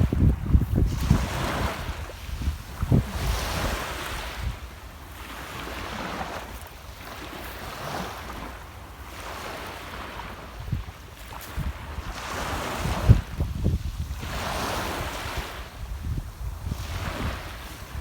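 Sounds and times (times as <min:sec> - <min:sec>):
wind buffeting microphone: 0:00.0 - 0:04.8, 0:10.6 - 0:18.0
sea waves washing onto shore: 0:00.0 - 0:18.0.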